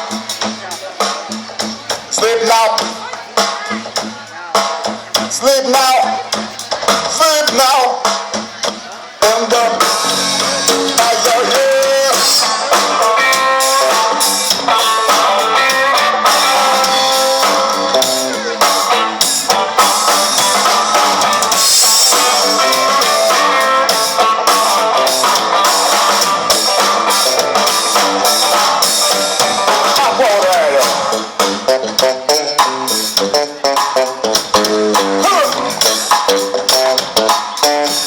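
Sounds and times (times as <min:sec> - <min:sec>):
drum kit beat: 0:00.0 - 0:38.0
guitar melody: 0:09.9 - 0:38.0.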